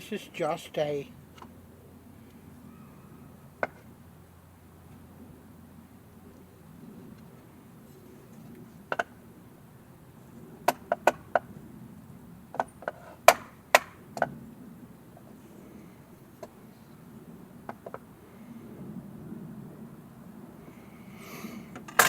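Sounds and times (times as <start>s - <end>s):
sharp wooden knocks: 12.9s - 13.9s.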